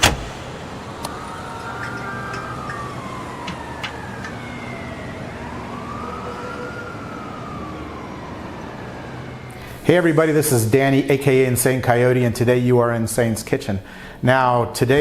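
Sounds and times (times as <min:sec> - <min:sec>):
siren wailing: 0:00.0 - 0:10.4.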